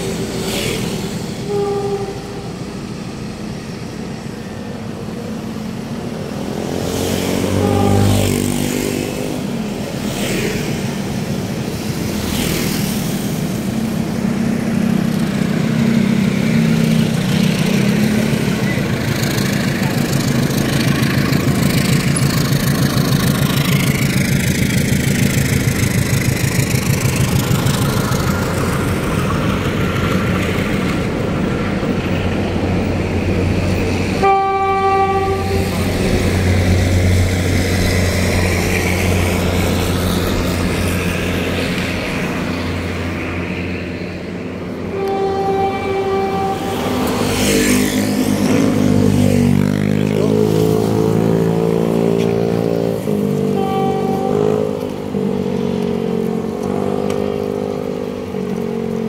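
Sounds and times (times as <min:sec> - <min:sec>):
train clattering past: 0:00.0 - 0:59.0
train horn blast: 0:01.4 - 0:03.0, 0:06.8 - 0:09.2, 0:34.1 - 0:37.4, 0:44.7 - 0:55.3.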